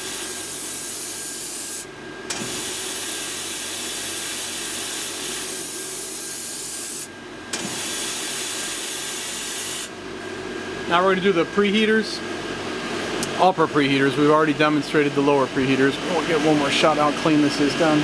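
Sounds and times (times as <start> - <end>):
hiss of air and spray: 2.5 - 7.1.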